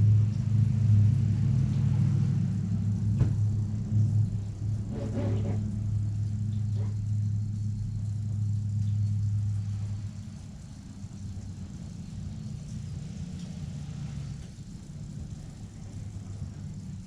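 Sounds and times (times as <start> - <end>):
low motor hum: 0.0 - 17.0
faint brief knocks: 3.2 - 3.4.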